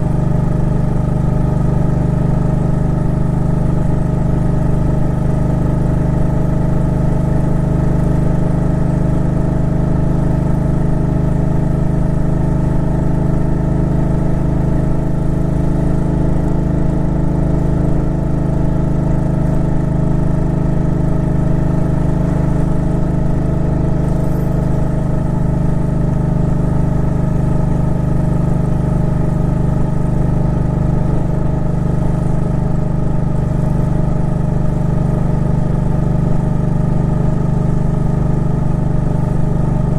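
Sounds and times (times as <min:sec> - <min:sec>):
motorcycle engine running steadily: 0:00.0 - 0:39.9.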